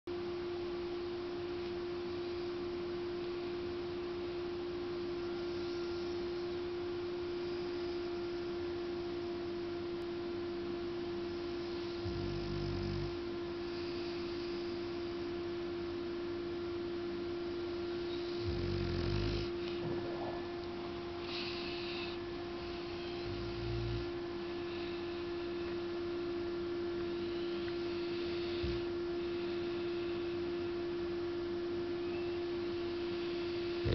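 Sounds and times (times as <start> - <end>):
steady humming tone: 0.1 - 33.9
faint breathy sounds: 4.8 - 9.4, 11.0 - 15.6, 17.4 - 33.9
dog snoring: 5.0 - 8.9, 11.1 - 15.4, 17.7 - 25.8, 26.9 - 30.7, 32.0 - 33.9.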